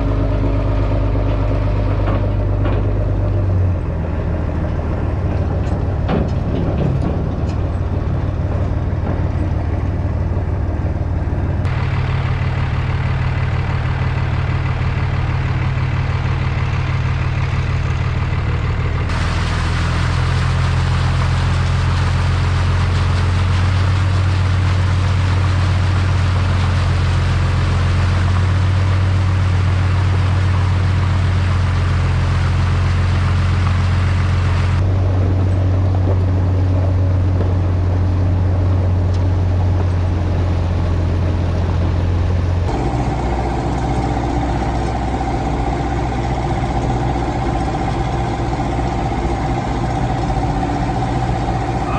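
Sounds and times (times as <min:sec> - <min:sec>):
vehicle engine running: 0:00.0 - 0:51.9
water rushing hiss: 0:42.7 - 0:51.9.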